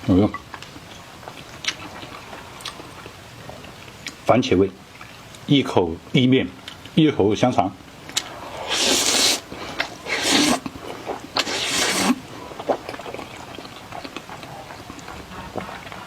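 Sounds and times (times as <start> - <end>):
chewing with wet clicks: 0.3 - 4.2, 6.6 - 7.0, 8.0 - 8.4, 12.2 - 16.0
person slurping pasta: 8.2 - 13.6.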